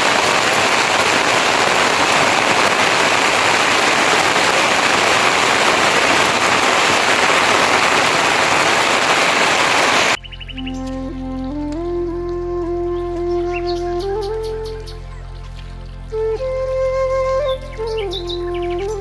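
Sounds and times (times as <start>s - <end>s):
heavy rain falling: 0.0s - 10.2s.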